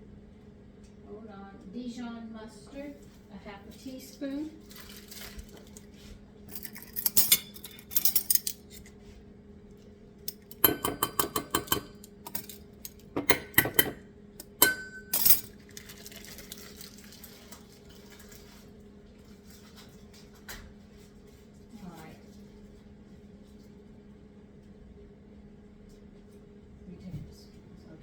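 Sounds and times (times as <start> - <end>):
low appliance hum: 0.0 - 28.0
metal utensil clinking on glass: 6.5 - 8.7, 10.3 - 15.6.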